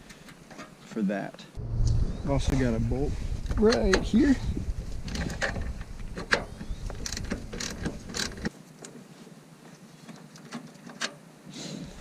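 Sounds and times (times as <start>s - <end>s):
low rumble: 1.6s - 8.2s
hand tools clicking and knocking: 5.1s - 9.0s.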